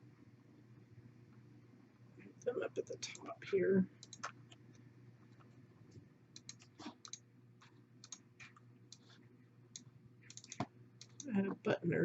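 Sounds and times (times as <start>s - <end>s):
low steady hum: 0.0s - 12.0s
mouse and keyboard clicking: 4.0s - 5.5s, 6.4s - 7.2s, 8.0s - 11.3s.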